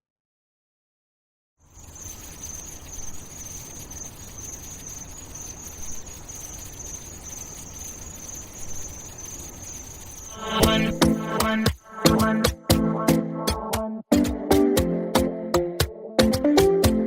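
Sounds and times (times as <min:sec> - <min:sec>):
crickets chirring: 0:01.6 - 0:12.6.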